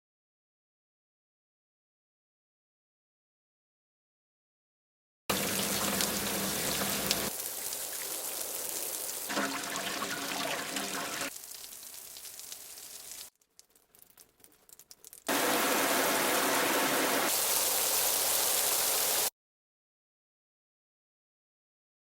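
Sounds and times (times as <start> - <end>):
rain-like water rush: 5.3 - 19.3
water pouring and splashing: 5.3 - 19.3
faint hiss: 17.3 - 19.3.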